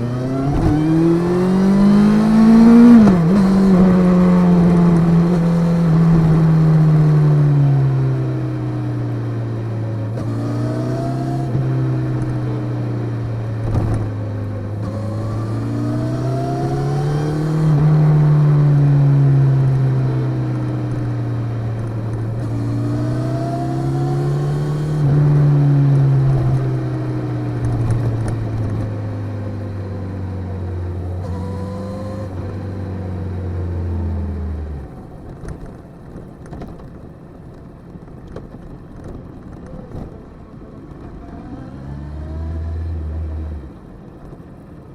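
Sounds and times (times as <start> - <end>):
motorcycle engine revving: 0.0 - 35.7.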